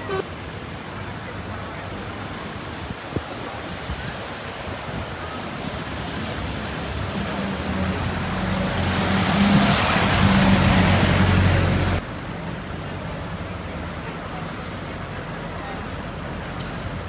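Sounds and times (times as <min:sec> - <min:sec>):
vehicle approaching: 0:00.0 - 0:00.2, 0:05.6 - 0:14.1.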